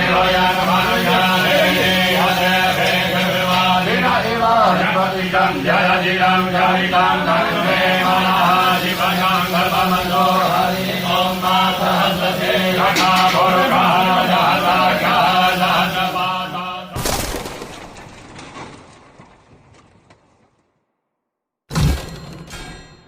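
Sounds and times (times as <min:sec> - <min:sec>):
voices chanting: 0:00.0 - 0:17.0
sudden sharp crash: 0:12.8 - 0:13.9.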